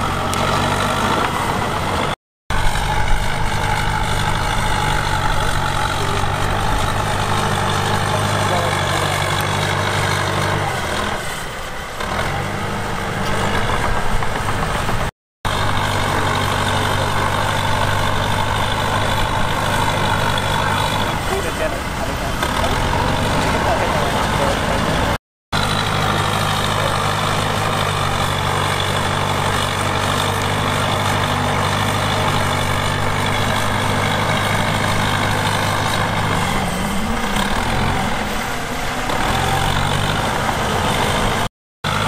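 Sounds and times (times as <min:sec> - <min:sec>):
heavy diesel engine running: 0:00.0 - 0:42.0.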